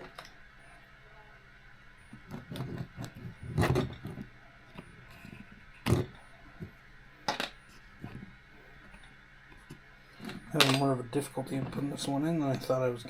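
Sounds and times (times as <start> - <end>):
small parts clicking and knocking: 2.1 - 10.9.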